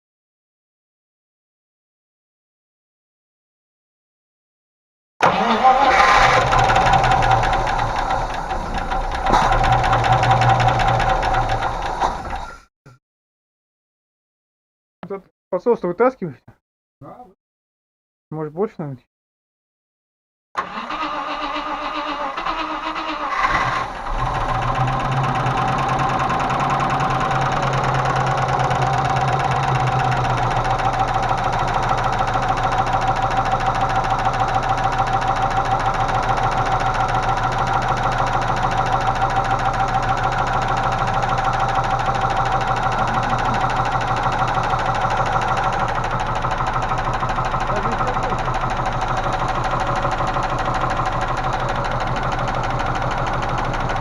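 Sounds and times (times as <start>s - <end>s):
car engine cranking and idling: 5.2s - 12.5s, 20.6s - 54.0s
fast even lifter ticking: 6.4s - 11.9s, 24.1s - 54.0s.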